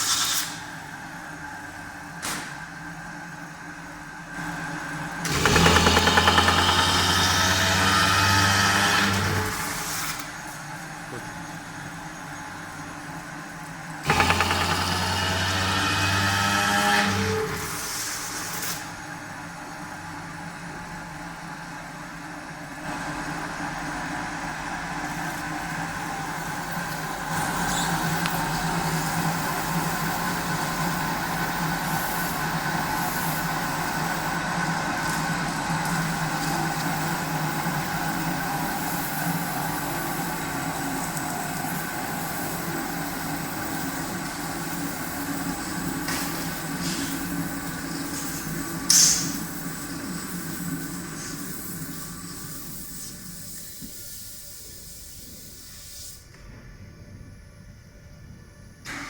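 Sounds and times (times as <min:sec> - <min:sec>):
metal spinning machine humming: 0:19.0 - 0:52.9.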